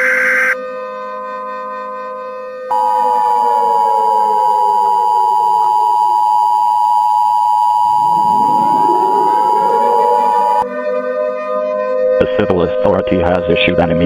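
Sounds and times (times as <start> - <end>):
two-tone alert signal: 0.0 - 0.6, 2.7 - 11.1
low sliding tone: 7.8 - 11.6.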